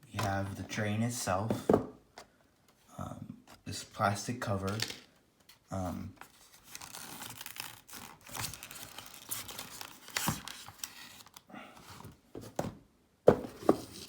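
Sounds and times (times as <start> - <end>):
plastic packaging crinkling: 6.4 - 11.5.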